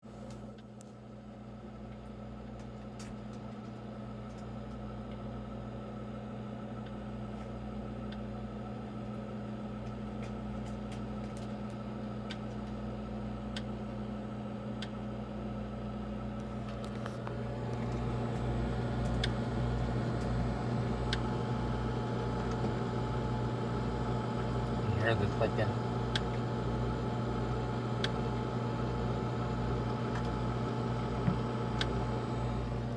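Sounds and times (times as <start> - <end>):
ice maker humming: 16.4 - 32.9.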